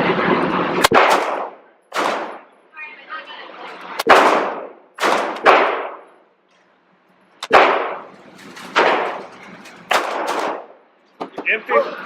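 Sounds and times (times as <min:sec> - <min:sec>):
gunshots with echo: 0:00.8 - 0:02.5, 0:04.0 - 0:06.1, 0:07.4 - 0:08.1, 0:08.8 - 0:09.2, 0:09.9 - 0:10.8.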